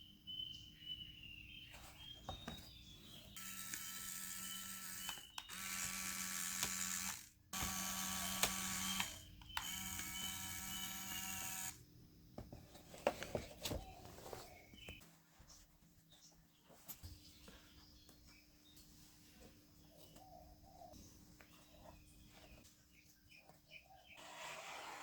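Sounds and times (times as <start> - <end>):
small motor whining: 3.4 - 11.8.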